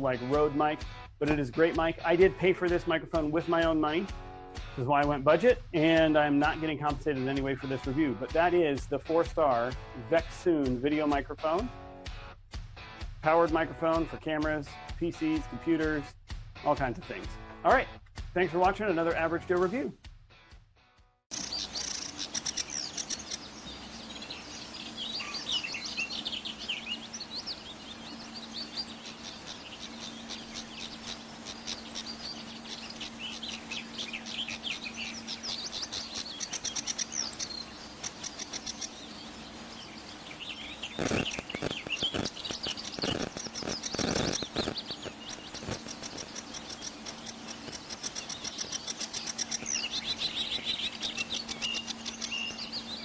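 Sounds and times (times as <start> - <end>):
small birds chirping: 21.3 - 53.0
steady low hum: 21.3 - 53.0.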